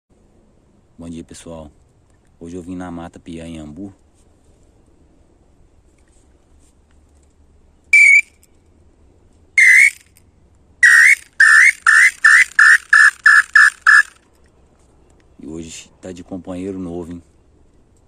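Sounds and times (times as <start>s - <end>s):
bird call whistle notes: 7.9s - 8.4s, 9.6s - 10.2s, 10.8s - 14.2s.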